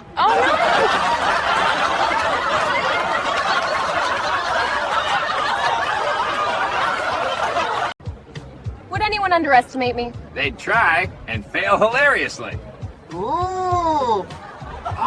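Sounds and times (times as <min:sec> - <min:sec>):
group of people laughing: 0:00.2 - 0:08.0, 0:14.1 - 0:15.0.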